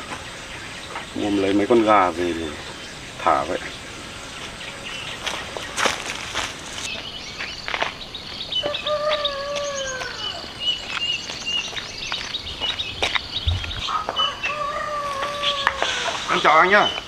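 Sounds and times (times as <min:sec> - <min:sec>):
small birds chirping: 0:00.0 - 0:17.0
rooster crowing: 0:08.5 - 0:11.2, 0:13.3 - 0:16.8.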